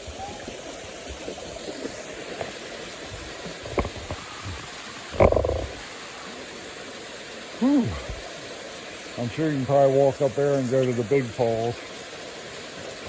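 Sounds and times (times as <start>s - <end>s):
rushing falling water: 0.0s - 13.0s
man breathing hard: 7.6s - 8.2s.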